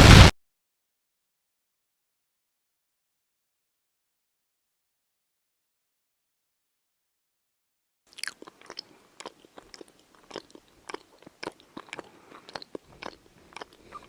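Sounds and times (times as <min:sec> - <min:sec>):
crunchy chewing: 0:08.1 - 0:14.0.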